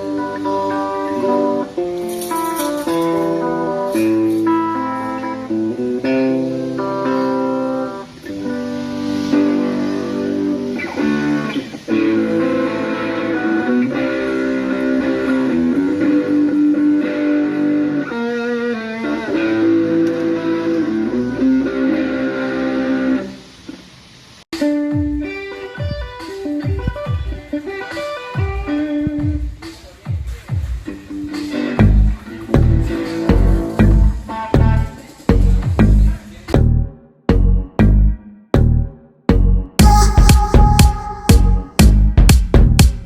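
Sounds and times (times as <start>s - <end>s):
plucked string melody: 0.0s - 22.0s, 31.3s - 38.1s, 39.8s - 42.3s
bass line: 31.8s - 43.0s.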